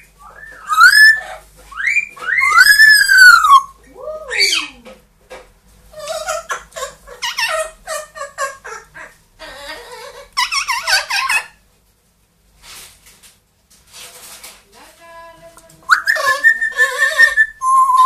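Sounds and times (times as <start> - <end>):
parrot whistling and calling: 0.2 - 4.7, 5.9 - 11.6, 15.9 - 18.0.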